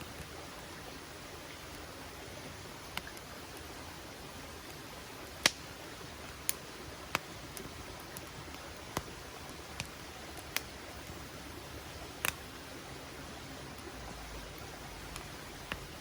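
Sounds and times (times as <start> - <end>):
campfire wood crackling: 0.0 - 16.0
sharp fire pops: 5.4 - 5.6.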